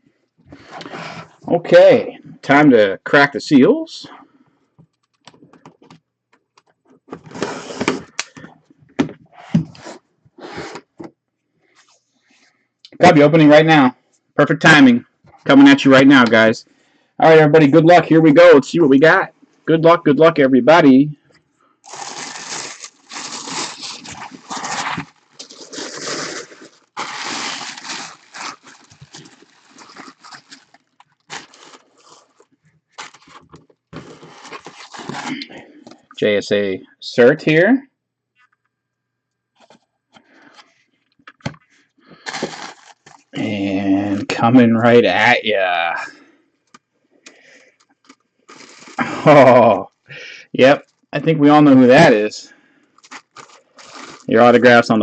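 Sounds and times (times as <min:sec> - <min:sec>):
cardboard box tape tearing: 0:21.9 - 0:32.3, 0:34.0 - 0:35.4, 0:42.3 - 0:43.2.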